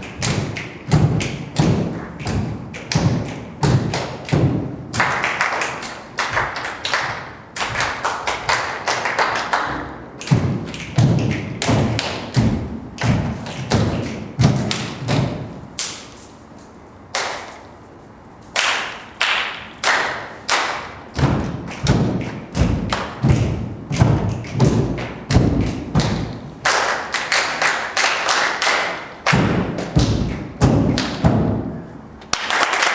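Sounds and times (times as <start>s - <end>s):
body percussion slaps: 0.0s - 16.3s, 17.1s - 17.6s, 18.5s - 32.9s
feet stomping on stage floor: 10.3s - 15.5s, 21.2s - 26.4s, 29.3s - 31.7s.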